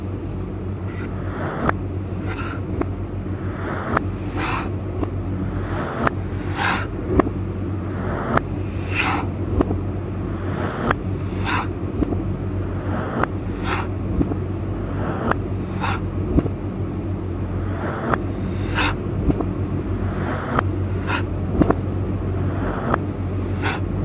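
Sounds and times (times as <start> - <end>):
steady low hum: 0.0 - 24.0
knife slicing vegetables: 2.1 - 3.0.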